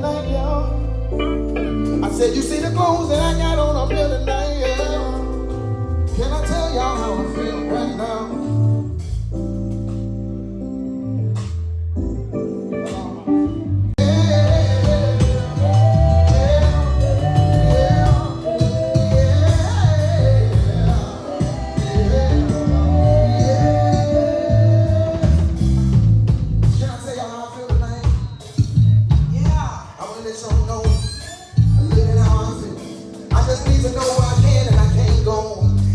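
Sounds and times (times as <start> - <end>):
person singing: 0.0 - 8.9, 12.8 - 25.8
guitar: 0.0 - 35.9
live blues band: 0.0 - 35.9.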